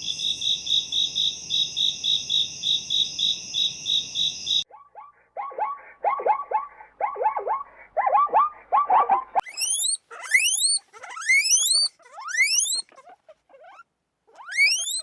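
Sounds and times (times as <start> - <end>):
short animal calls: 6.6 - 15.0
high piercing rising whistles: 9.4 - 12.8, 14.5 - 15.0.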